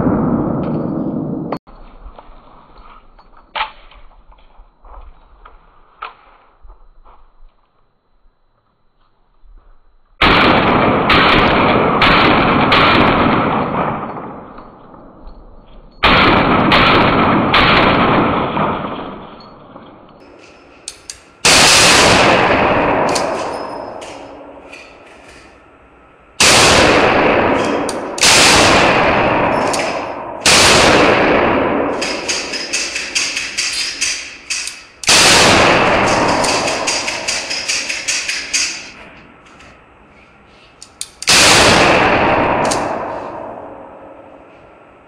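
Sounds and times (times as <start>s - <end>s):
loud handgun shots: 10.2s - 14.5s, 16.0s - 19.2s, 21.4s - 24.8s, 26.4s - 39.0s, 41.3s - 44.3s.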